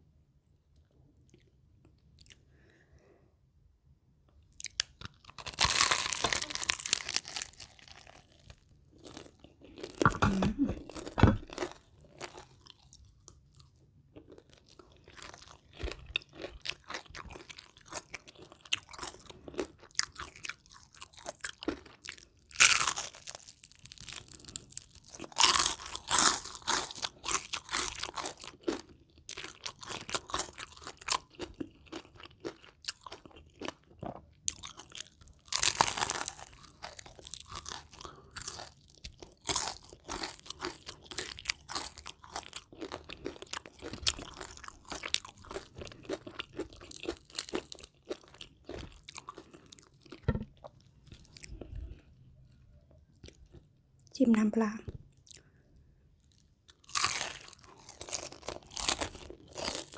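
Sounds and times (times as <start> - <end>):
quiet chewing: 0.7 - 2.8, 40.2 - 54.1
crunching bites of crisp food: 4.5 - 52.1, 56.2 - 59.9.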